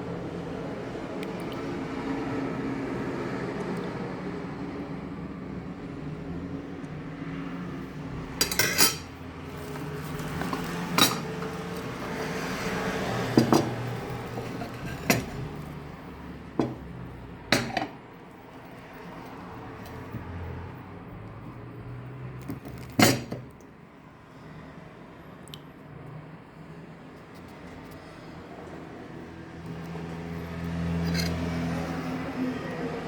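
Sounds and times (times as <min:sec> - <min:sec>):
metal utensil knocking on dish: 0:11.0 - 0:11.5, 0:13.4 - 0:13.8, 0:16.6 - 0:16.9, 0:17.5 - 0:18.0.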